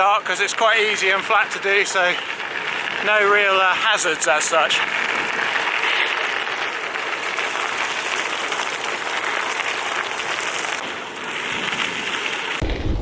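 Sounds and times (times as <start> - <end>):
bicycle tyres rolling on gravel: 0.0 - 13.0
wind rumble on microphone: 11.4 - 13.0.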